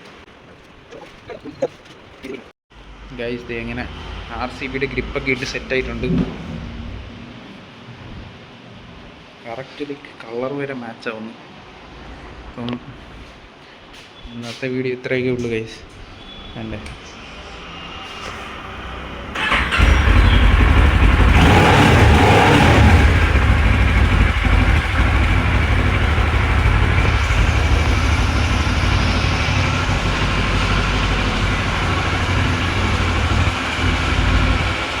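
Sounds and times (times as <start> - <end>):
motorcycle engine starting and running: 19.3 - 35.0.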